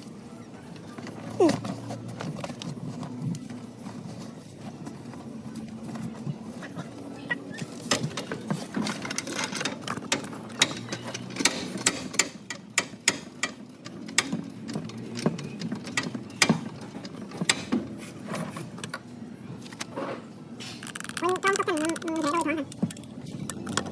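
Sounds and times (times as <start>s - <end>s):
hand tools knocking on metal: 7.6s - 18.1s.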